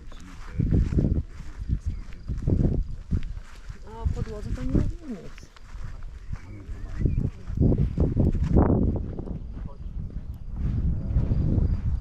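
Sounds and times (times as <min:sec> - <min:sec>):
footsteps on forest path: 0:00.0 - 0:12.0
low rumble: 0:06.1 - 0:12.0.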